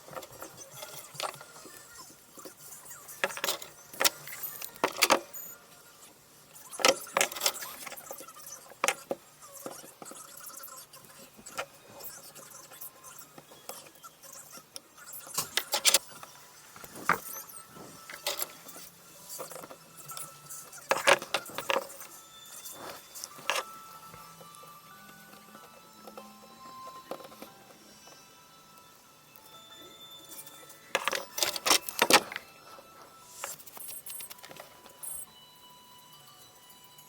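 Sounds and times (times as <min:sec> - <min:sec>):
small tools clicking and clinking: 0:00.1 - 0:05.5, 0:06.6 - 0:12.8, 0:13.4 - 0:23.8, 0:30.3 - 0:32.4.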